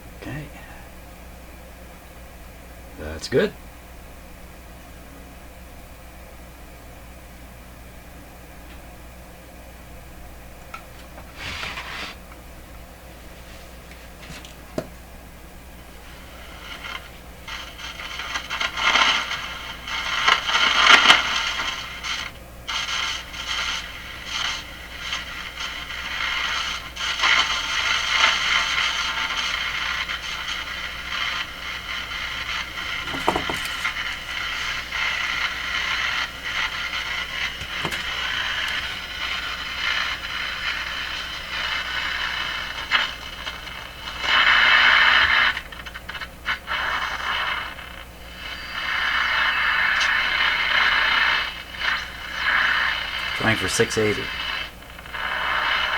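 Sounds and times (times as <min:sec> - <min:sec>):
radio static hiss: 0:00.0 - 0:01.3, 0:03.0 - 0:03.6, 0:15.6 - 0:55.9
radio click: 0:32.7 - 0:35.1, 0:36.1 - 0:39.5, 0:53.2 - 0:54.5.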